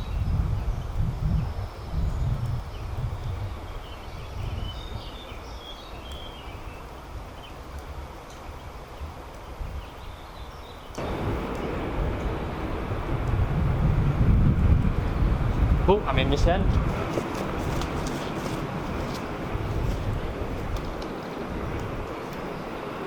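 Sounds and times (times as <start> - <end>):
small birds chirping: 0.0 - 13.4
noise hiss: 0.0 - 23.0
wind rumble on microphone: 0.0 - 23.0.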